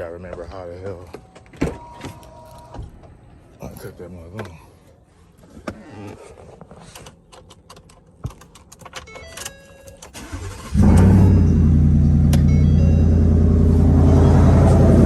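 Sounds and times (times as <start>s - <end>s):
truck engine starting and idling: 10.2s - 15.0s.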